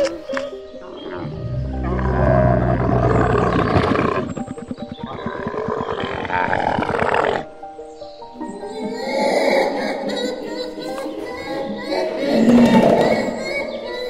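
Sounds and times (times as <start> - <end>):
background music: 0.0 - 14.0
large animal roaring: 1.0 - 7.5
pulsing animal growl: 1.0 - 7.6.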